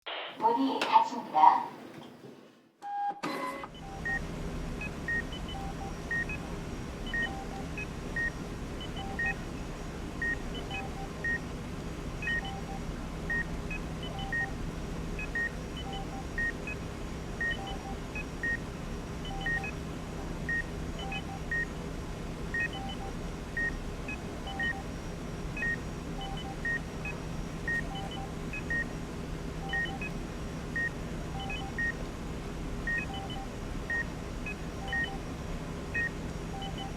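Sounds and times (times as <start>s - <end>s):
steady low hum: 3.8s - 36.9s
short electronic beeps: 29.6s - 30.1s, 31.4s - 31.9s, 32.9s - 34.0s, 34.8s - 35.2s, 36.0s - 36.9s.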